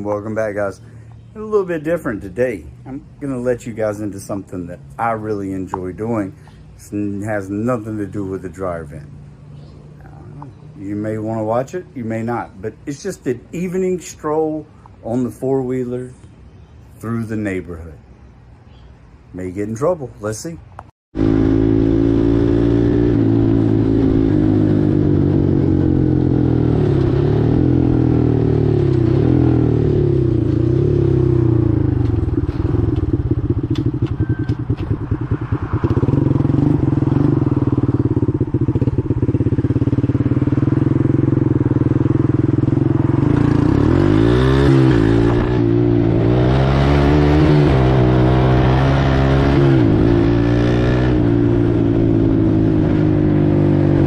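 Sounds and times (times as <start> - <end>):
atv engine revving: 21.2 - 54.0.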